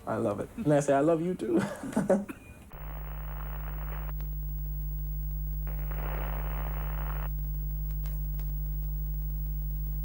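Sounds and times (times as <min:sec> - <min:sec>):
low electrical hum: 0:02.6 - 0:10.0.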